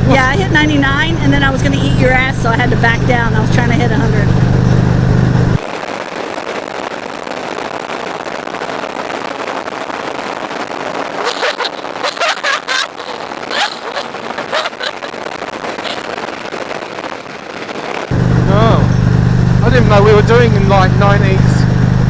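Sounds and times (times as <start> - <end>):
motorcycle road noise: 0.0 - 22.0
wind rush: 4.3 - 19.6
short high-pitched cries: 11.2 - 15.2.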